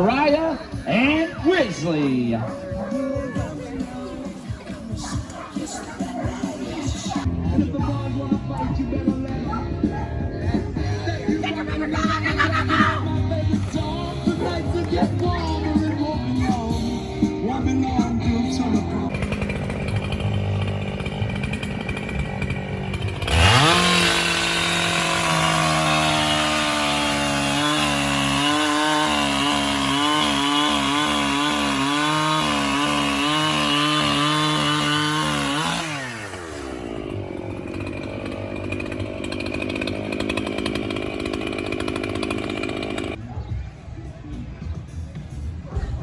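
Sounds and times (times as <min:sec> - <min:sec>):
chainsaw idling and revving: 0:11.2 - 0:16.6, 0:19.1 - 0:43.2
chainsaw cutting wood: 0:13.5 - 0:15.4, 0:19.1 - 0:43.2.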